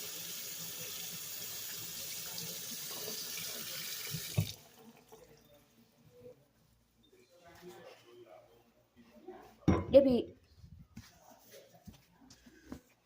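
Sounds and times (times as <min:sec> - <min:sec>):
tap water splashing into sink: 0:02.9 - 0:04.6.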